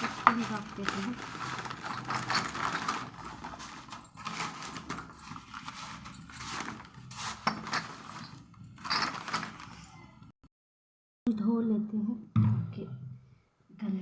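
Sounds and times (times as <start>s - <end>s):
cups clinking and knocking: 0.0s - 9.9s.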